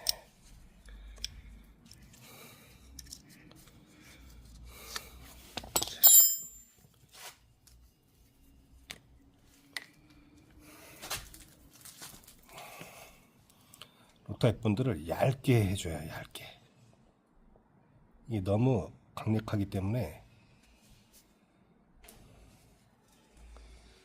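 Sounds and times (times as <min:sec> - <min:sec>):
hand tools clicking and rubbing: 0:05.5 - 0:06.7
metallic clink: 0:05.7 - 0:06.8.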